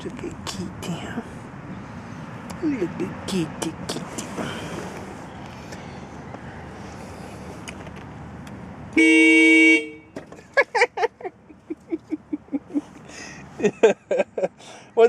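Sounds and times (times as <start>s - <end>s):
traffic noise: 0.0s - 15.0s
car horn two-tone blast: 9.0s - 10.2s.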